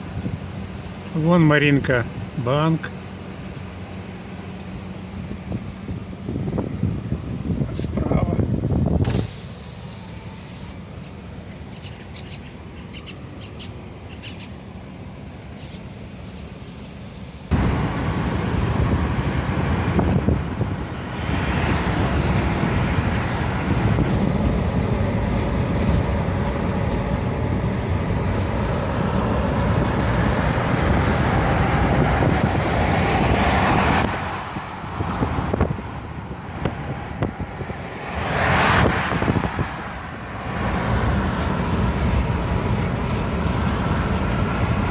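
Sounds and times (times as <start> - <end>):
car road noise: 0.0 - 44.9
wind buffeting microphone: 5.2 - 9.4, 17.5 - 42.7.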